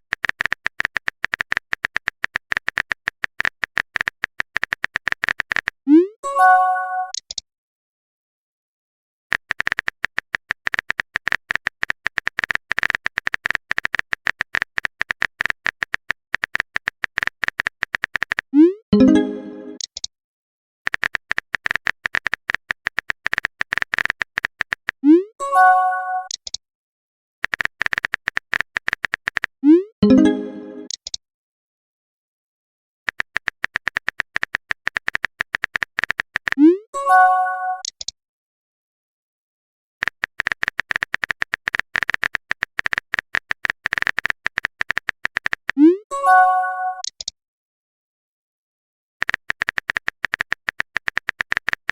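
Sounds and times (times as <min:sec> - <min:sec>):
keyboard typing clicks: 0:00.0 - 0:06.0, 0:07.0 - 0:07.4, 0:09.3 - 0:20.1, 0:20.9 - 0:25.2, 0:26.2 - 0:26.6, 0:27.4 - 0:31.2, 0:33.1 - 0:38.1, 0:40.0 - 0:46.0, 0:47.0 - 0:47.3, 0:49.2 - 0:51.9
phone keyboard taps: 0:20.9 - 0:25.0, 0:40.0 - 0:45.8, 0:49.2 - 0:51.9.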